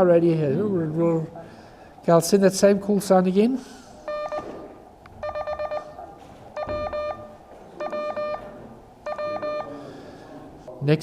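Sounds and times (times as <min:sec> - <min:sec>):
morse code tone: 0:04.1 - 0:04.6, 0:05.2 - 0:06.0, 0:06.6 - 0:09.8.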